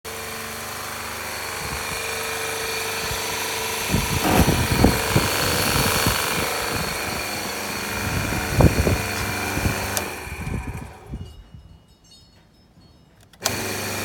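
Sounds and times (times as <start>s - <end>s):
pressure washer pump running: 0.1s - 11.1s, 13.4s - 14.0s
low knocks and thuds: 4.2s - 6.2s.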